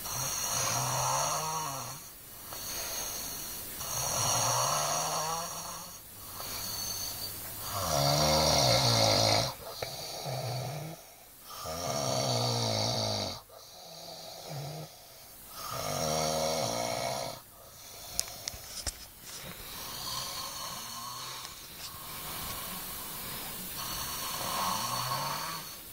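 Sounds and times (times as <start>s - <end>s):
soft breaths: 0.0s - 7.9s, 13.4s - 15.9s, 17.4s - 25.9s
boy snoring: 0.0s - 18.6s, 19.4s - 25.9s.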